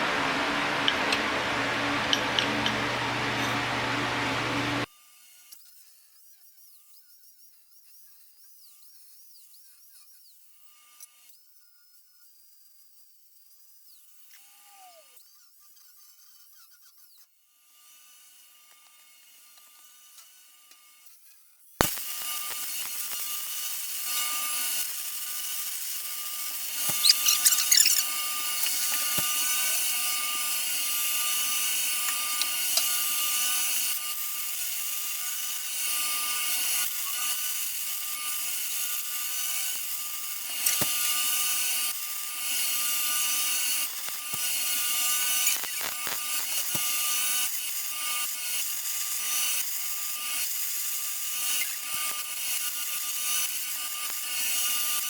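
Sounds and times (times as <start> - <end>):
angle grinder grinding steel: 0.0 - 4.9, 18.2 - 55.0
grinder disc scraping: 0.1 - 4.9, 26.5 - 30.9, 31.8 - 33.2.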